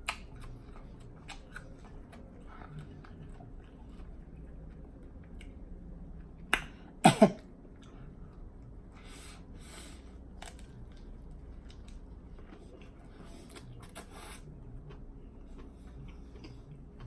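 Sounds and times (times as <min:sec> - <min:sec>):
mouth smacking and chewing: 0:00.0 - 0:05.6
throat cough or burp: 0:07.0 - 0:07.4.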